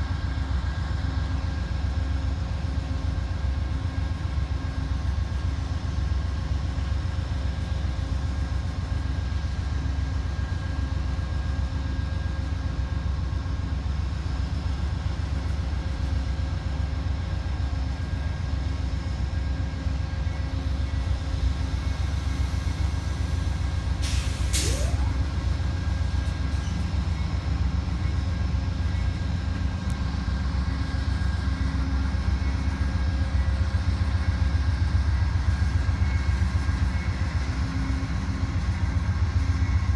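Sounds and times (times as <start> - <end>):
diesel locomotive idling: 0.0 - 39.9
air release hiss: 24.0 - 25.2.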